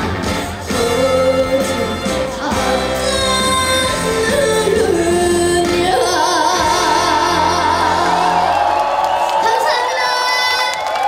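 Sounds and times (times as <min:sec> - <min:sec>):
woman singing: 0:00.0 - 0:08.5
band accompaniment: 0:00.0 - 0:09.1.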